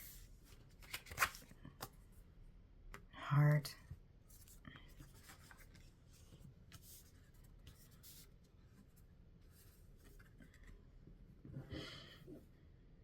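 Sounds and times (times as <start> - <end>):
cards rustling and sliding: 0.0 - 2.0.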